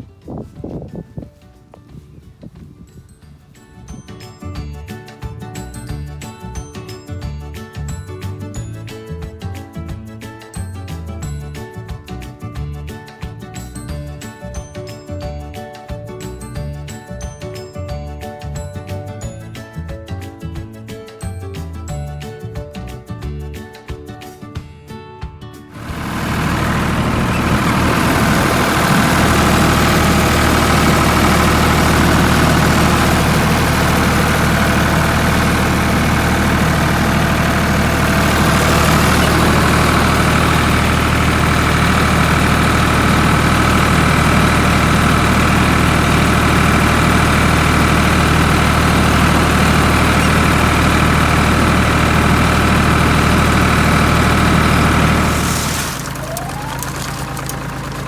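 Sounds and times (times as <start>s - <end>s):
tractor engine droning: 25.8s - 58.0s.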